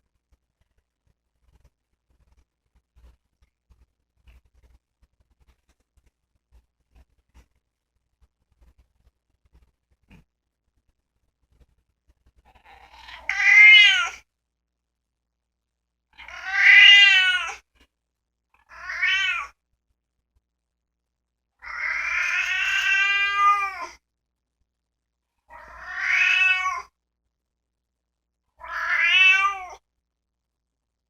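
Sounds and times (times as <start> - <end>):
cat meowing: 12.5 - 14.2, 16.2 - 17.6, 18.6 - 19.6, 21.6 - 24.0, 25.5 - 26.9, 28.6 - 29.8.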